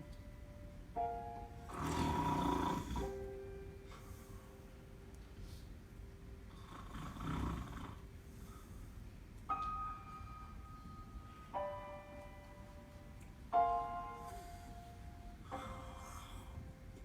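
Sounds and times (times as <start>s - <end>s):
ringing bell-like notes: 9.5s - 14.4s.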